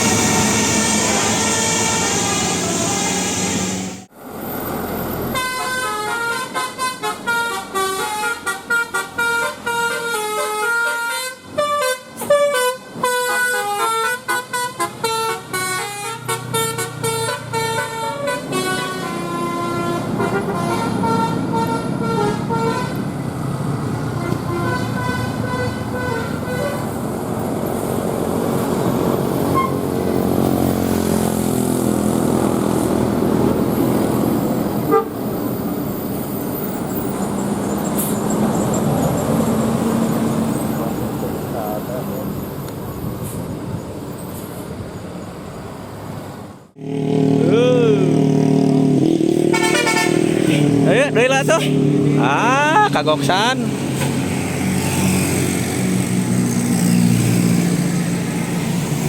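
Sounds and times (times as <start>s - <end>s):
musical air horn tune: 0.0s - 4.0s, 5.3s - 23.0s, 34.9s - 35.2s, 49.5s - 50.7s
vehicle running noise: 0.0s - 59.0s.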